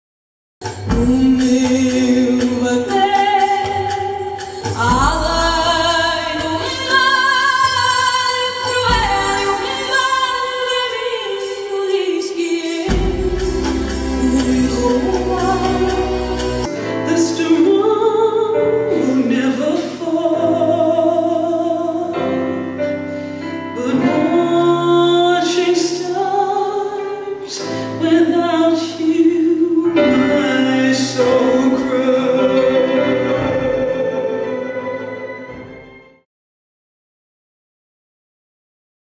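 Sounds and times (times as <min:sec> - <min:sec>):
choral singing with held notes: 0:29.2 - 0:35.8.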